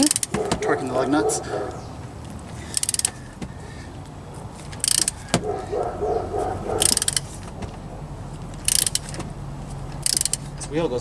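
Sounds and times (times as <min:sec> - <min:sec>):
ratchet wrench clicking: 0:00.0 - 0:00.4, 0:02.7 - 0:03.2, 0:04.7 - 0:05.3, 0:06.8 - 0:07.4, 0:08.6 - 0:09.2, 0:10.0 - 0:10.6.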